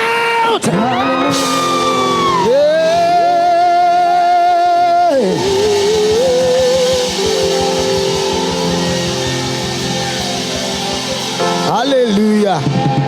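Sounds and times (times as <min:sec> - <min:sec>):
church band music with guitar: 0:00.6 - 0:13.0.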